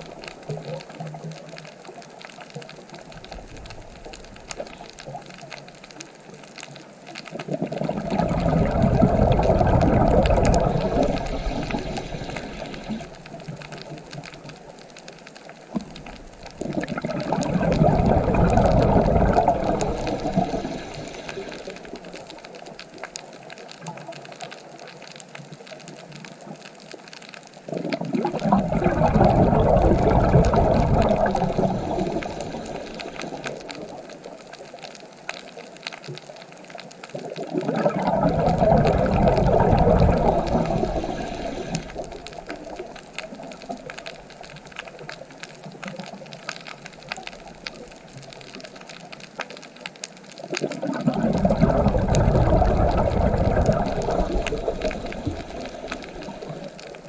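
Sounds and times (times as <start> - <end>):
ocean waves washing in: 7.6 - 14.3, 16.5 - 22.9, 27.8 - 34.3, 37.4 - 44.9, 50.5 - 57.0.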